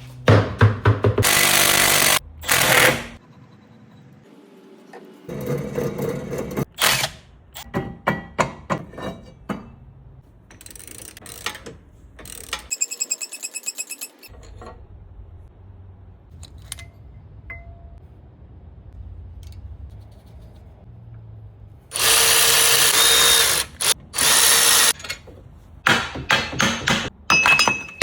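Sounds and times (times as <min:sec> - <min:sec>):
metal tools knocking and clinking: 0:26.2 - 0:28.0.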